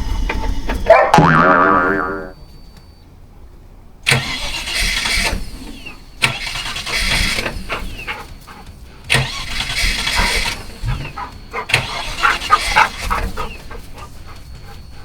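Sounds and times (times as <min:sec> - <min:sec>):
engine starter cranking: 0:04.0 - 0:08.3, 0:09.0 - 0:14.1.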